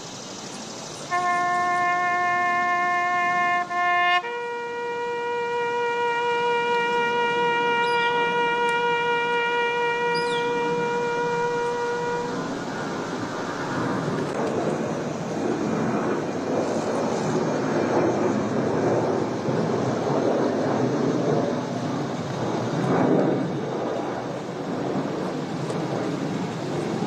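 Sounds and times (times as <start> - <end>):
steady rumbling noise: 0.0 - 27.0
held brass note: 1.1 - 13.2.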